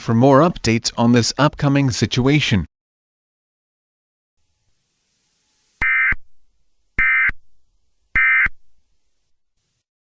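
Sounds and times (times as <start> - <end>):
buzzy digital bleeps: 5.2 - 6.2, 7.0 - 7.4, 8.2 - 8.6.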